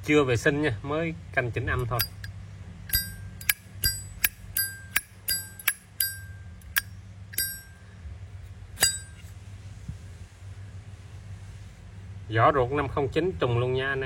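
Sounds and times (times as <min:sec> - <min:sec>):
lighter lid clicking with ringing tone: 0:02.9 - 0:07.8.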